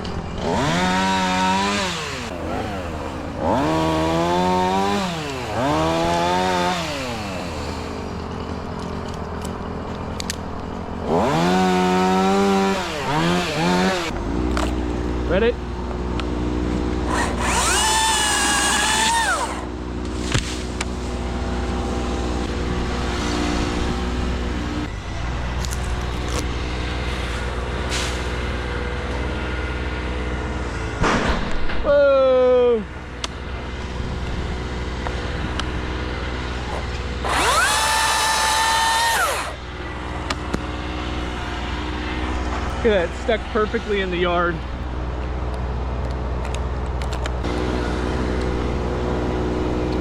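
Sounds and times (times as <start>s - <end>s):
low engine drone: 0.0s - 31.8s, 32.8s - 50.0s
chainsaw idling and revving: 0.3s - 8.4s, 11.0s - 20.0s, 35.8s - 40.2s, 47.4s - 50.0s.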